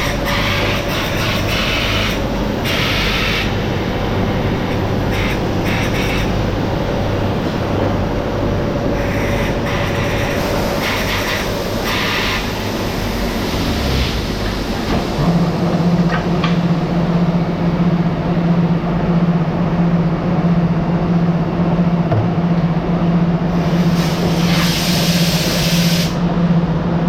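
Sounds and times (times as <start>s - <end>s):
factory machinery rumbling: 0.0s - 25.2s
strong low hum: 12.4s - 23.5s.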